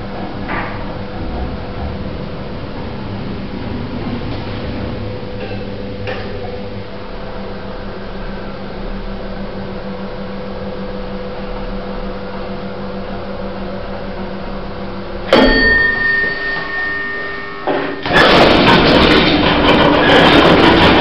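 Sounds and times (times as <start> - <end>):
lift car humming: 0.0 - 21.0
mechanical clunk: 15.3 - 16.7
lift chime: 15.3 - 18.0
loud mechanical rattling: 17.7 - 21.0.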